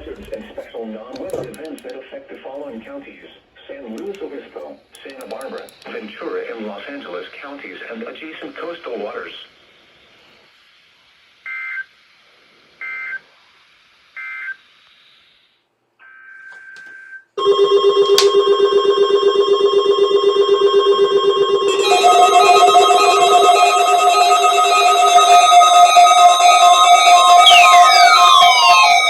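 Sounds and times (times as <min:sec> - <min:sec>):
pulsing electronic ringing: 0:17.4 - 0:29.0
two-tone data bursts: 0:21.0 - 0:29.0.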